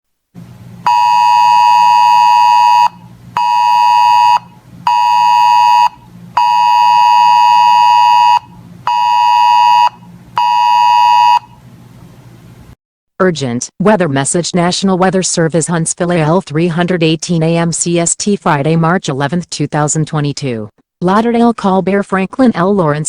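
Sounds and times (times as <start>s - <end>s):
weather radio alert tone: 0.9s - 11.5s.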